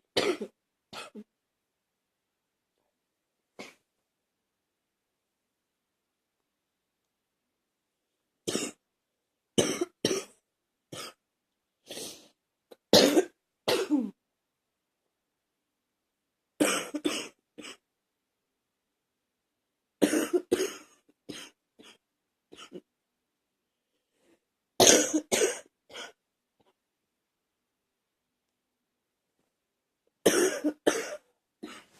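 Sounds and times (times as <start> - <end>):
person coughing: 0.1 - 1.3, 13.0 - 14.2, 16.6 - 17.8, 20.0 - 22.0, 24.8 - 26.2, 30.2 - 31.9.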